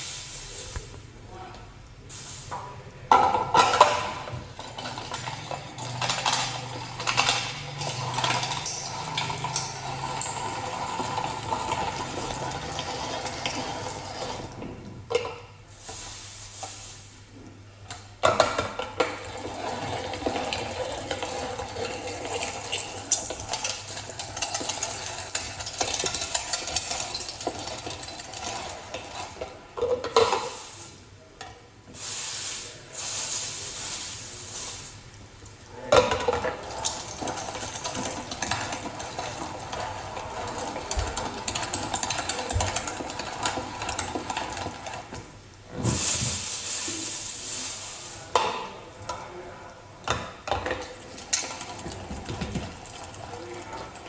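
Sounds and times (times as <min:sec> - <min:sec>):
manual meat grinder scraping: 0:04.7 - 0:14.6, 0:19.2 - 0:29.5, 0:36.6 - 0:45.1.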